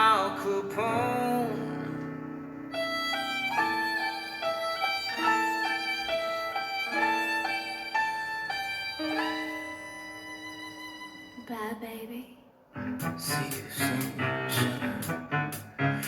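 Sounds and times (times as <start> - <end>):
violin melody: 2.6 - 12.0.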